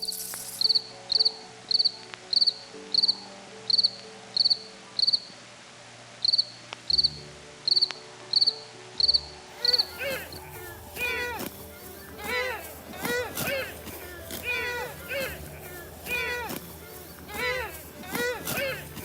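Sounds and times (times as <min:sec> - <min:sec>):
cricket chirping: 0:00.0 - 0:05.4, 0:06.2 - 0:12.1
soft background music: 0:00.0 - 0:19.0.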